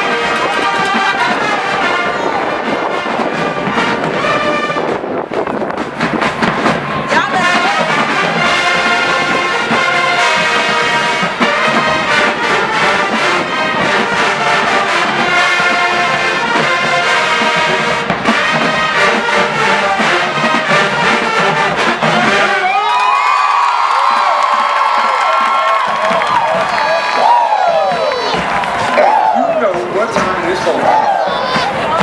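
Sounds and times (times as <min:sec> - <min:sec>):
trombones and trumpets: 0:00.0 - 0:22.9
steady drum beat: 0:00.0 - 0:32.0.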